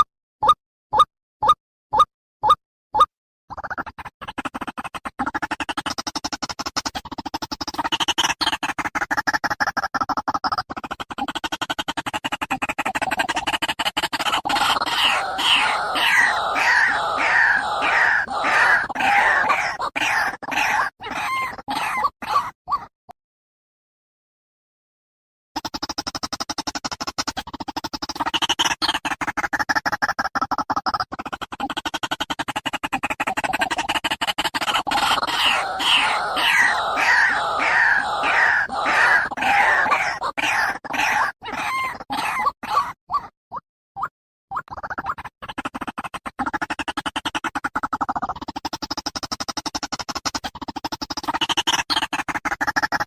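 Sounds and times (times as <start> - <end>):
fast rattle of sharp pulses: 10.6 - 20.4, 31.2 - 40.9
bird calling harsh repeated notes: 14.3 - 22.5, 34.7 - 42.9.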